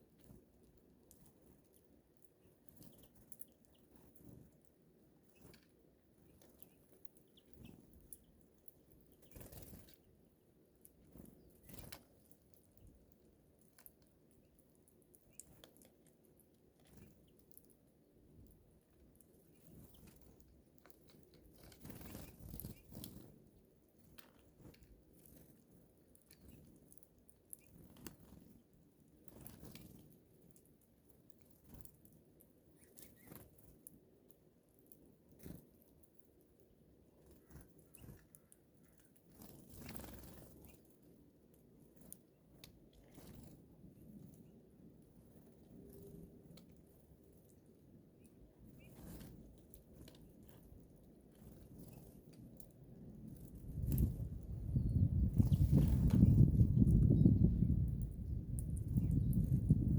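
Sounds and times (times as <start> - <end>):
soft bird chirps: 0.0 - 59.9
faint bird wing flutters: 9.3 - 10.0, 21.6 - 23.4, 39.3 - 40.8, 48.8 - 50.6, 53.4 - 57.3.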